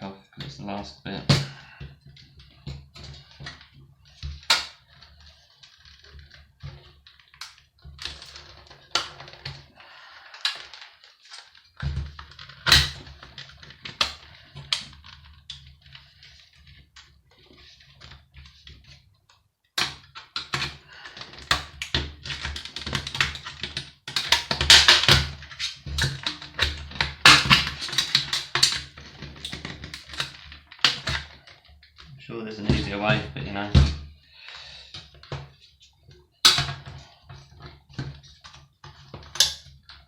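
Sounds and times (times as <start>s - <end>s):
clatter of parts: 1.3s - 19.0s, 19.8s - 32.1s
clicks and knocks of parts: 19.8s - 32.1s, 36.4s - 40.0s.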